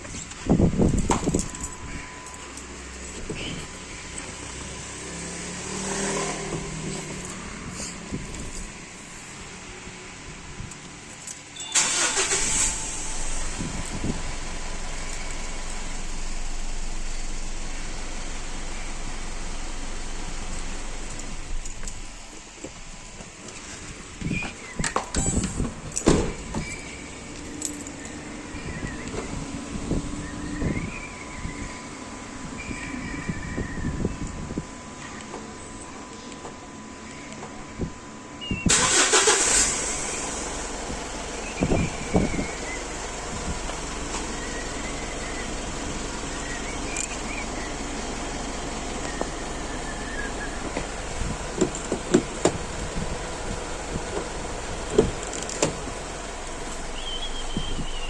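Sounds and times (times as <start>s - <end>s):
engine starter cranking: 11.6s - 15.8s, 38.7s - 40.5s
pickup engine idling: 38.8s - 58.0s.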